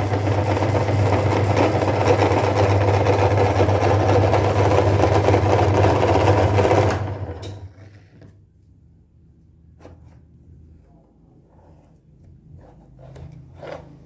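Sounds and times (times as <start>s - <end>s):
meat grinder motor humming: 0.0s - 7.5s.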